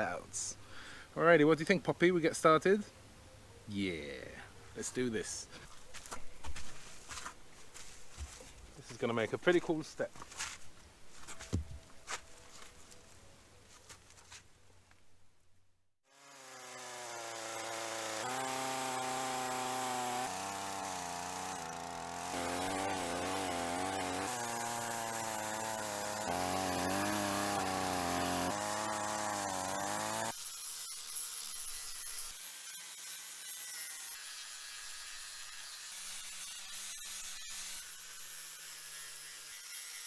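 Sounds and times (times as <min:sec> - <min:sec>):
power tool whining: 0:16.1 - 0:40.0.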